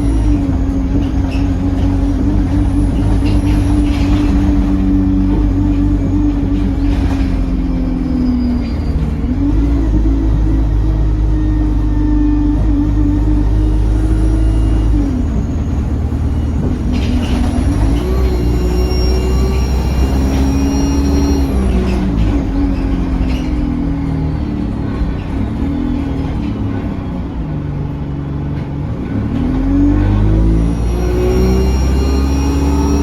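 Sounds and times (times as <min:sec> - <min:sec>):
diesel bus engine: 0:00.0 - 0:33.0
thin high whistle: 0:17.6 - 0:21.7.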